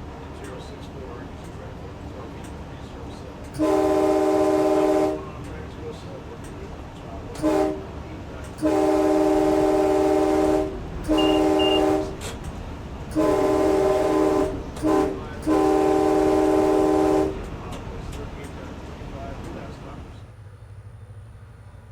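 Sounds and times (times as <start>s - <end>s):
low rumble of train: 0.0s - 21.9s
locomotive air horn blasts: 3.6s - 5.4s, 7.4s - 8.0s, 8.6s - 12.4s, 13.1s - 17.5s.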